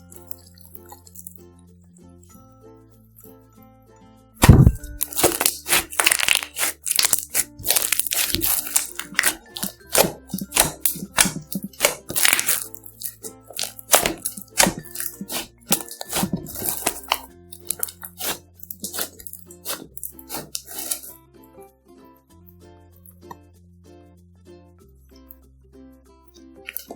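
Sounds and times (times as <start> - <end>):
light background music: 0.0 - 26.9
slime crackling and popping: 4.4 - 21.1, 26.7 - 26.9.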